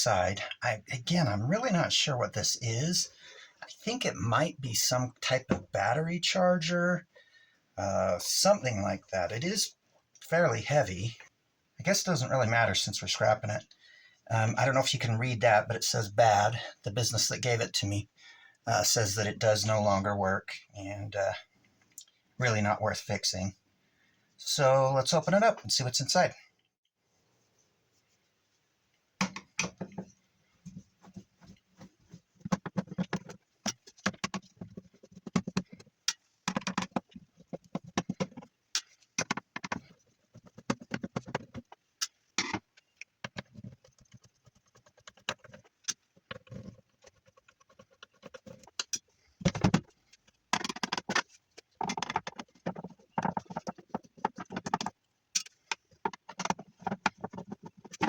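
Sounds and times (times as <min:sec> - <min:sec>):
tools and screws rattling and scraping: 0:29.2 - 0:58.0.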